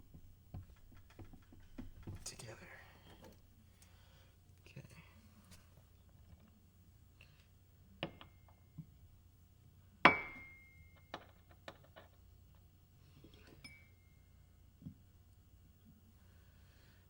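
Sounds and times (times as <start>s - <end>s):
soft taps and knocks: 0.1s - 2.5s.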